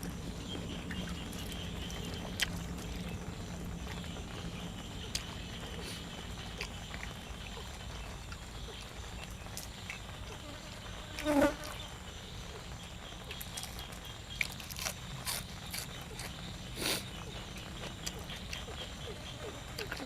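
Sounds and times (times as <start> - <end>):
person chewing and crunching: 0.9 - 3.2, 5.1 - 7.7, 13.3 - 20.0.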